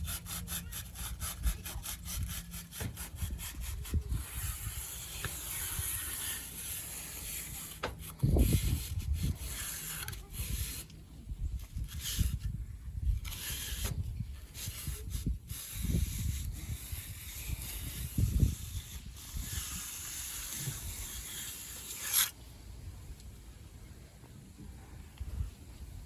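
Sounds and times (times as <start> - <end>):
tool scraping wet concrete: 0.0 - 11.0, 11.6 - 12.5, 13.2 - 22.4
wind rumble on microphone: 1.1 - 6.4, 8.0 - 21.3, 24.4 - 26.0.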